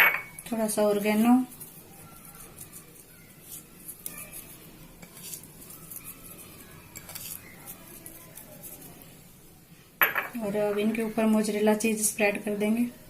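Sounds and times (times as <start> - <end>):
utensil clinking against dishes: 0.0 - 0.4, 10.0 - 10.4.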